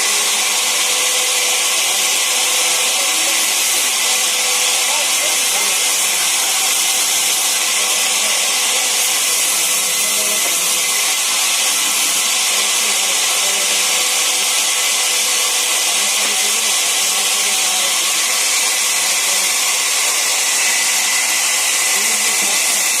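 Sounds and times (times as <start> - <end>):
sawmill saw hissing: 0.0 - 23.0.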